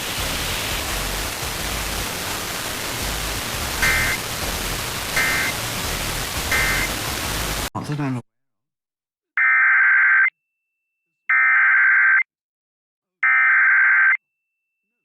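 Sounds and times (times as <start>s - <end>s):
radio static hiss: 0.0s - 8.2s
two-tone data bursts: 3.8s - 4.2s, 5.2s - 5.6s, 6.4s - 7.0s.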